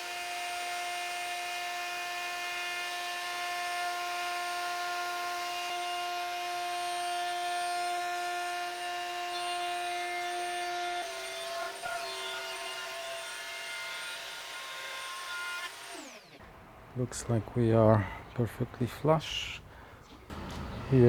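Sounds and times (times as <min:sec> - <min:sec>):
router high whine: 0:20.3 - 0:21.0.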